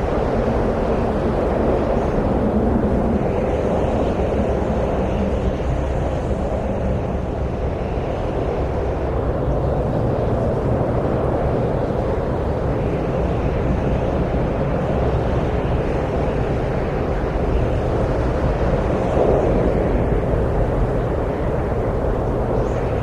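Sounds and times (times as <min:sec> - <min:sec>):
rushing wind: 0:00.0 - 0:23.0.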